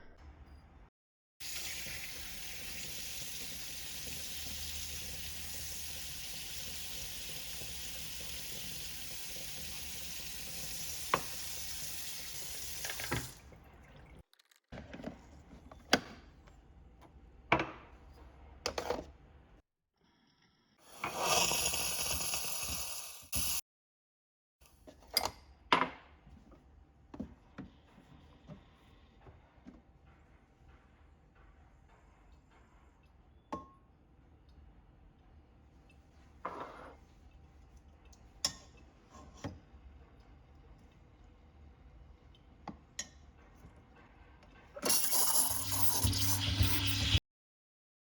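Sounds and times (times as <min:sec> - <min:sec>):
steam wand hissing: 0:20.9 - 0:23.6, 0:44.8 - 0:47.2.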